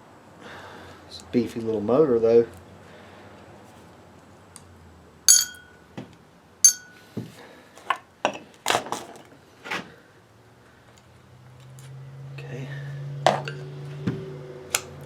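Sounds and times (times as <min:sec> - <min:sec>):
metal tools knocking and clicking: 0:05.3 - 0:05.7, 0:06.6 - 0:07.0
ringing metallic clinks: 0:05.3 - 0:05.8, 0:06.6 - 0:07.0.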